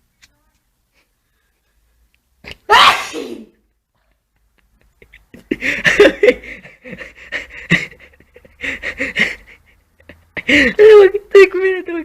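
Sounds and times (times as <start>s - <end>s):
person sneezing: 2.5s - 3.5s
breathy panting or laughter: 4.6s - 10.8s.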